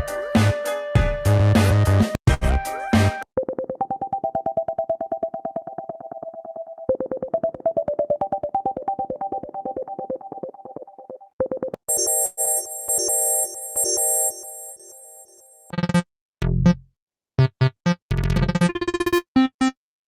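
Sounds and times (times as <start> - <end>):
synthesized ringtone melody: 3.5 - 16.0, 18.4 - 19.8
bright chiming ringtone: 11.9 - 15.6.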